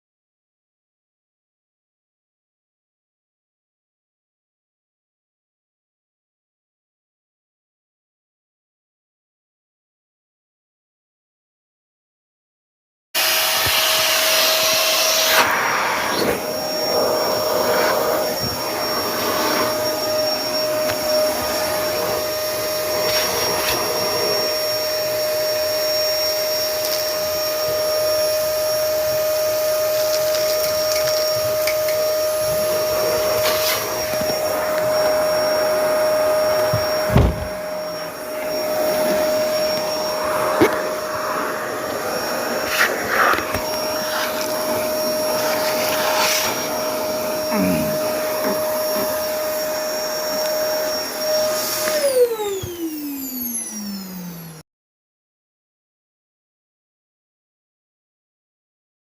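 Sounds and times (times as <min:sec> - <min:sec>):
small electric motor whining: 0:13.2 - 0:54.6.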